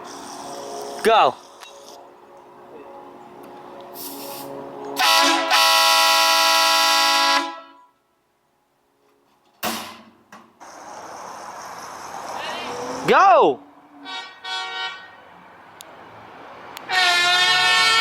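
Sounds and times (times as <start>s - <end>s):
air horn blast: 4.0s - 7.9s, 14.0s - 15.2s, 16.9s - 18.0s.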